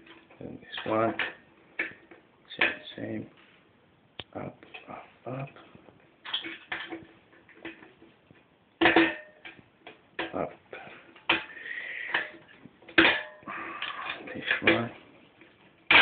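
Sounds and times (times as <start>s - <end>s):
sharp metallic clanks: 0.0s - 3.2s, 8.8s - 15.2s.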